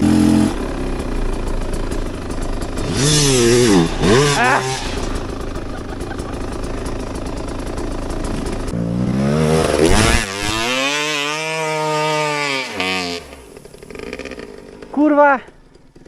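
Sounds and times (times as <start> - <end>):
dirt bike engine revving: 0.0 - 16.0
person talking: 14.9 - 15.5.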